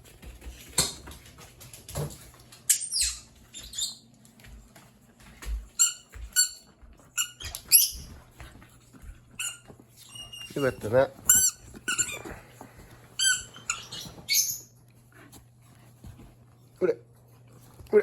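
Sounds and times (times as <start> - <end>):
dog squeaking: 7.2 - 8.1, 9.4 - 12.3, 13.2 - 14.8
soft taps and rustles: 15.2 - 16.8.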